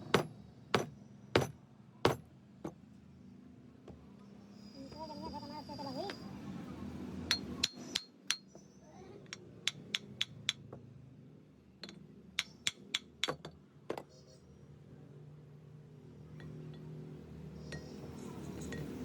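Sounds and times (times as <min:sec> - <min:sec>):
metal tools tapping steel: 0:07.3 - 0:10.7, 0:11.8 - 0:14.1.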